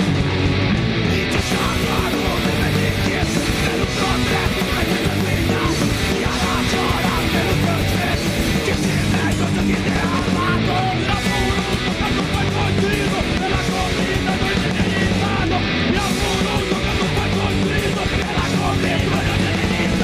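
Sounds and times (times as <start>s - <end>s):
punk rock band playing: 0.0s - 20.0s.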